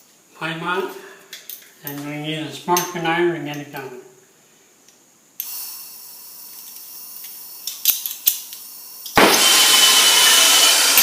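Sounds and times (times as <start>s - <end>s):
gas hissing from torch tip: 5.4s - 7.5s
torch flame burning: 9.2s - 11.0s.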